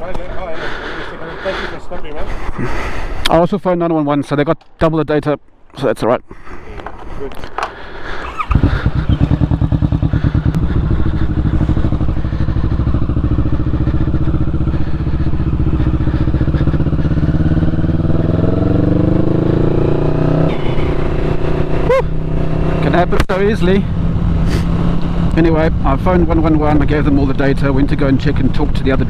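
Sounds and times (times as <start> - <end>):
motorcycle engine accelerating: 7.6 - 29.0.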